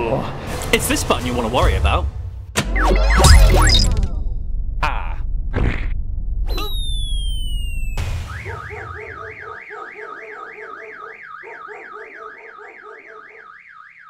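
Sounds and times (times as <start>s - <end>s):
descending electronic tones: 2.6s - 4.3s, 6.5s - 14.0s
loud low rumble: 4.1s - 6.5s
warbling electronic alarm siren: 6.5s - 14.0s.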